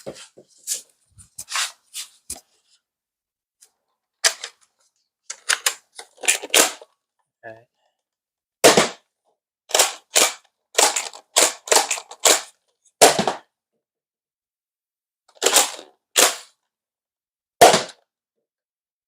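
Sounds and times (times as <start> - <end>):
toy blaster clacks and spring snaps: 5.3 - 6.9, 9.7 - 13.2, 15.3 - 16.5.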